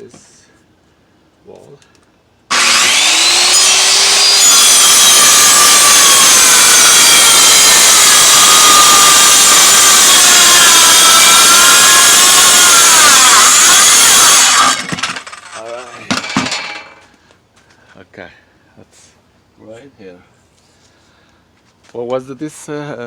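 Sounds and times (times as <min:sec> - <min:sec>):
circular saw cutting wood: 0:02.5 - 0:17.0.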